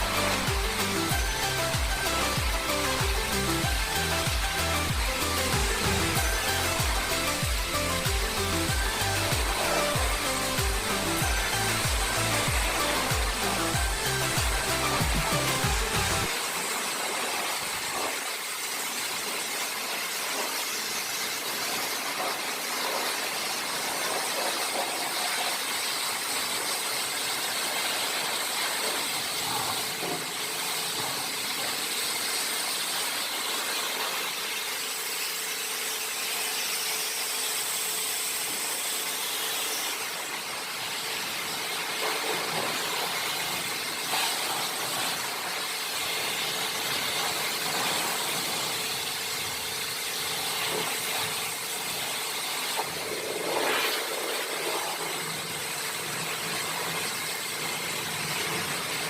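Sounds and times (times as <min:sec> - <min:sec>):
high whine: 0:00.0 - 0:16.9
pressure washer spray hissing: 0:00.0 - 0:59.0.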